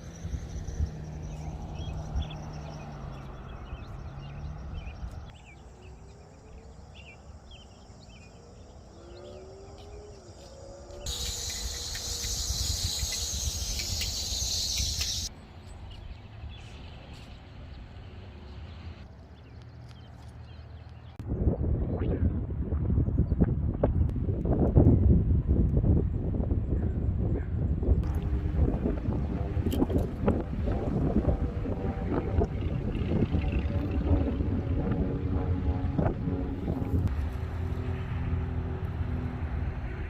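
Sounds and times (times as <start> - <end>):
small birds chirping: 0.0 - 21.2
low outdoor rumble: 0.0 - 40.0
high insect buzz: 9.4 - 15.3.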